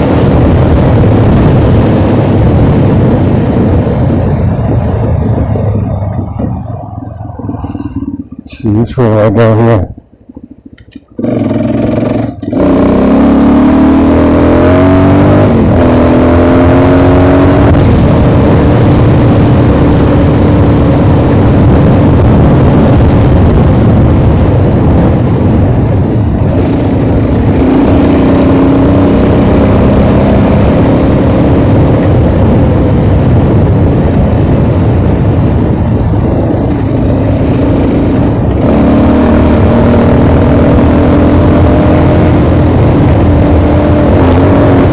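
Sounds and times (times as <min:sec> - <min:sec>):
motorcycle engine revving: 0:00.0 - 0:44.9.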